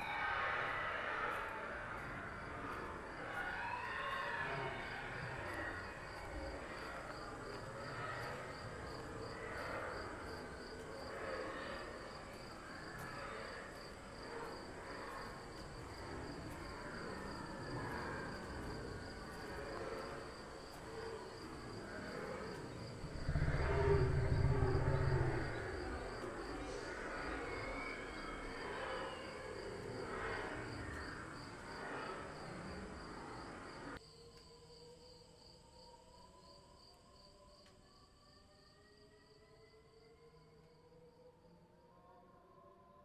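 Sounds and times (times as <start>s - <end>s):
faint wavering hoots: 0.0s - 34.0s
crickets chirping: 0.0s - 41.8s
low rumble: 22.7s - 27.7s.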